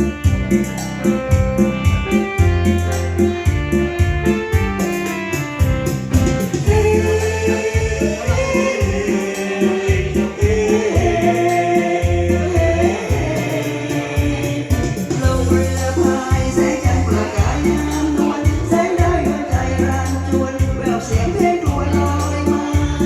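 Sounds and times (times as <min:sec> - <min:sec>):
band backing music: 0:00.0 - 0:23.0
bass beat: 0:00.0 - 0:23.0
person singing: 0:06.6 - 0:23.0.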